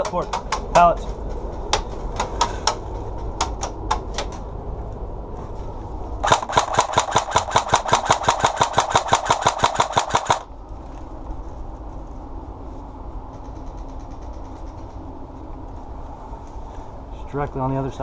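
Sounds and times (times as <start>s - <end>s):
airsoft gun shots: 6.2s - 10.5s.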